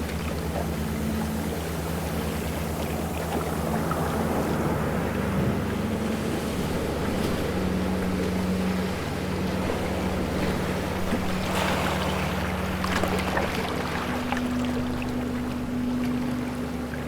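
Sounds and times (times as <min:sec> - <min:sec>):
low motor hum: 0:00.0 - 0:17.0
ocean waves washing: 0:00.0 - 0:17.0.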